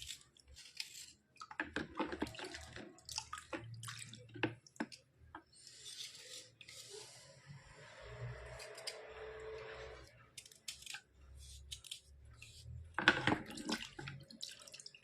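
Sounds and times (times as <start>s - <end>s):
slate pencil scraping: 5.6s - 7.3s.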